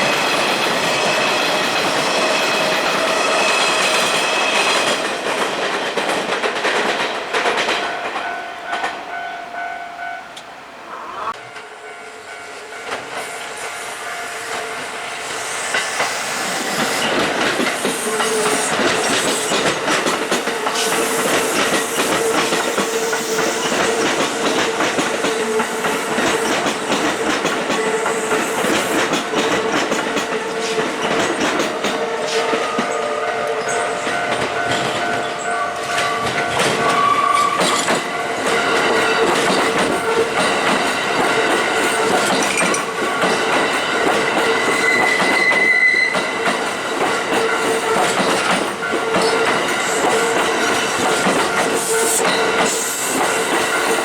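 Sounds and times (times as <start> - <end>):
train wheels clattering: 0.0 - 9.0, 12.7 - 54.0
crossing warning bell: 7.4 - 10.4, 11.3 - 20.9, 29.3 - 54.0.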